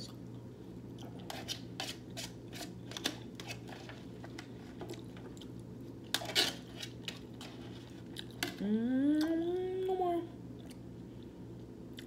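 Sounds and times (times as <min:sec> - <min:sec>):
low steady hum: 0:00.0 - 0:12.0
person chewing food: 0:04.3 - 0:08.6, 0:10.5 - 0:12.0.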